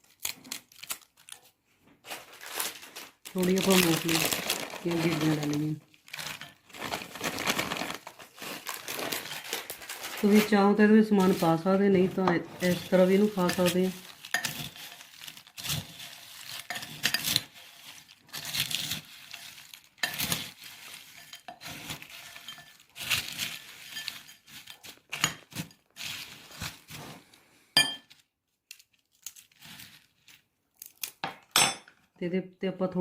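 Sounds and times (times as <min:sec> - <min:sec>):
snack mix crunching in a bowl: 0:00.0 - 0:27.4, 0:28.1 - 0:31.2
spoon clinking on a bowl: 0:27.8 - 0:28.1.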